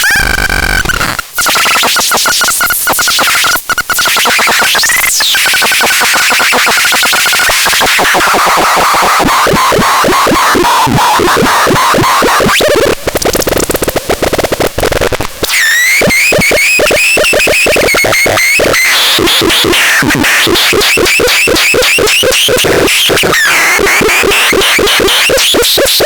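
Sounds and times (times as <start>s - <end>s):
noise hiss: 0.0s - 19.0s.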